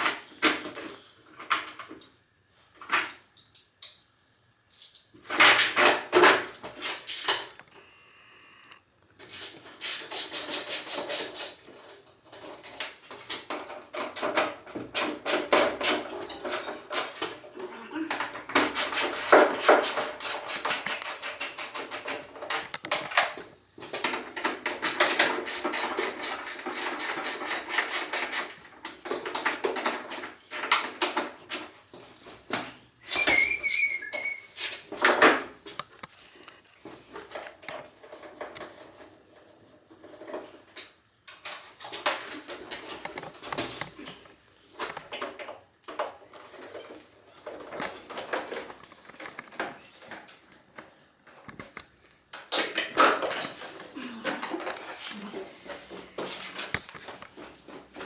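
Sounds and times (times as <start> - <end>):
whistle-like tone: 33.0 - 34.6.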